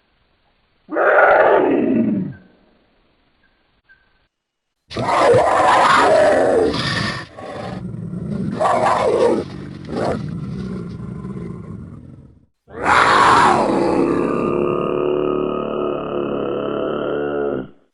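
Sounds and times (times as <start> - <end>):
big cat roaring and growling: 4.9 - 17.8.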